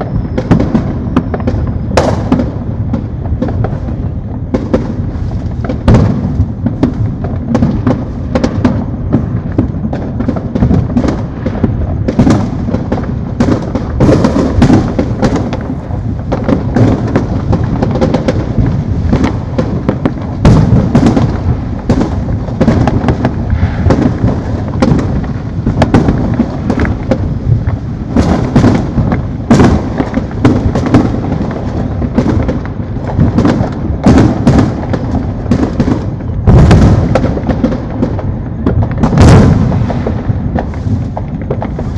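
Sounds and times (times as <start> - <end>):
fireworks cracks and pops: 0.0 - 41.9
fireworks rumbling booms: 0.0 - 41.9.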